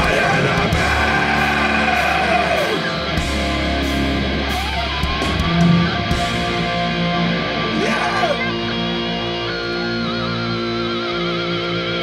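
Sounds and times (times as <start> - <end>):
shouted chants: 0.0 - 3.0
hardcore band playing live: 0.0 - 12.0.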